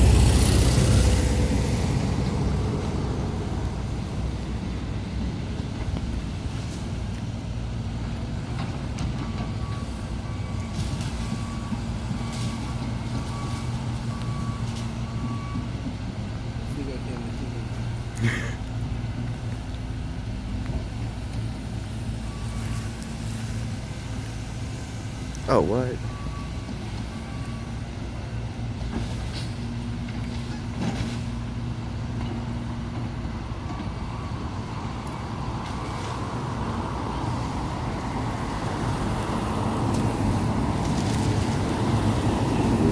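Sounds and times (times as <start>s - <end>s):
diesel engine running: 0.0s - 42.9s
reversing alarm beeping: 9.2s - 15.7s, 25.5s - 28.2s.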